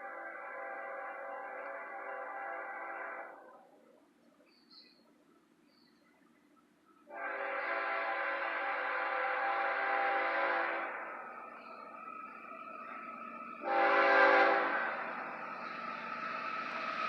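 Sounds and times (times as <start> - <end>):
locomotive air horn chord: 0.0 - 3.5, 7.1 - 11.6, 13.6 - 15.2
train rumble: 0.0 - 17.0.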